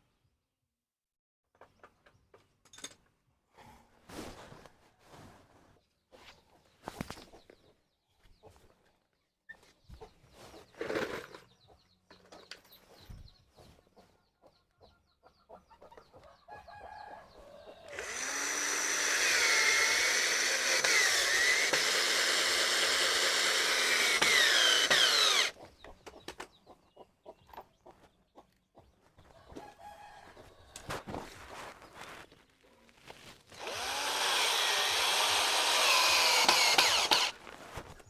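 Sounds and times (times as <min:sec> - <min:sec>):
power tool running: 0:17.9 - 0:25.6, 0:33.6 - 0:37.4.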